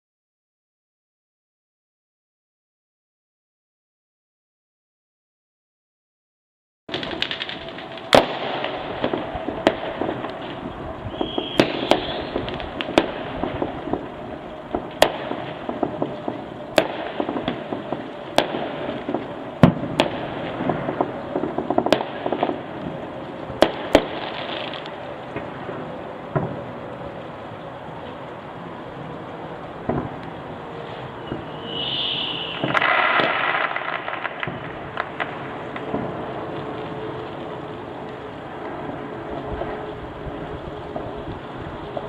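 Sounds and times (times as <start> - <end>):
fireworks sharp bangs: 6.9 - 26.8, 29.8 - 37.8
distant fireworks crackling: 6.9 - 42.0.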